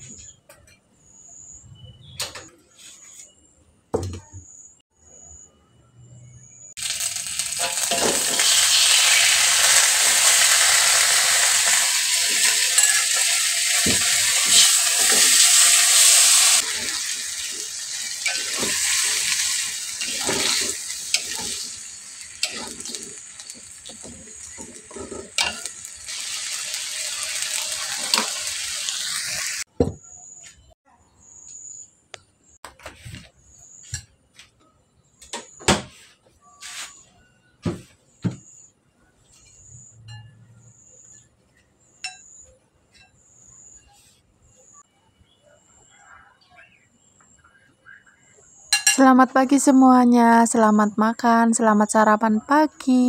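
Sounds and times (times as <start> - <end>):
food frying in hot oil: 6.8 - 29.7
utensil knocking and scraping in pan: 11.7 - 25.8, 28.0 - 28.4.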